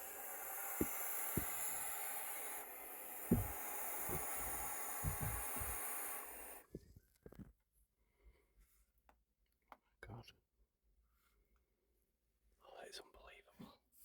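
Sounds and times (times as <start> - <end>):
young owls hissing: 0.0 - 6.7
dull handling thumps: 0.8 - 1.9, 3.1 - 7.0.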